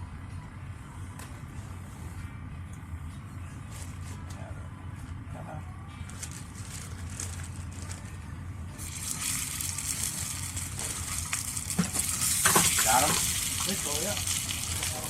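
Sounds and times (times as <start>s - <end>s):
steady low hum: 0.0s - 15.0s
hot dogs sizzling: 8.8s - 15.0s.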